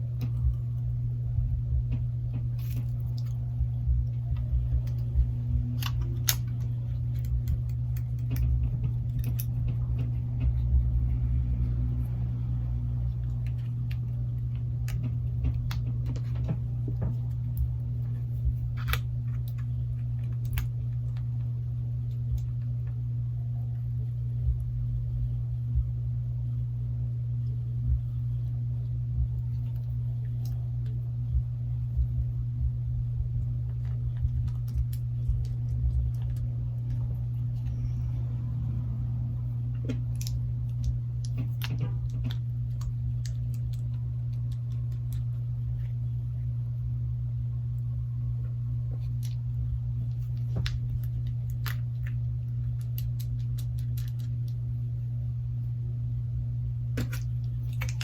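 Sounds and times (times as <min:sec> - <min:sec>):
low electrical hum: 0:00.0 - 0:58.0
small parts clicking and tapping: 0:02.4 - 0:10.6.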